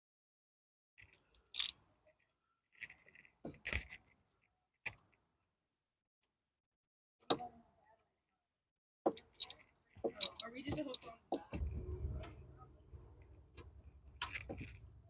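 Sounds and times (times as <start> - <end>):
metal tools clinking and clicking: 1.4 - 1.7, 9.2 - 9.6, 10.2 - 10.5.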